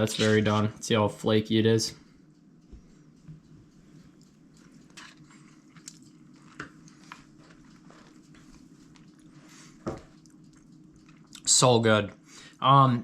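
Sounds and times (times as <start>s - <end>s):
low steady hum: 0.0s - 13.0s
person chewing fish: 4.2s - 9.4s, 10.1s - 11.5s.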